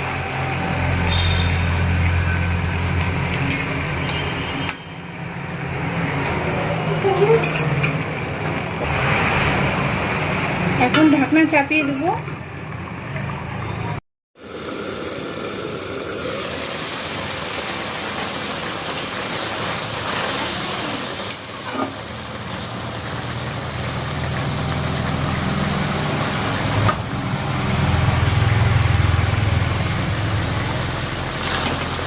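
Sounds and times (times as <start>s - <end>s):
curry sizzling in a pan: 14.4s - 32.0s.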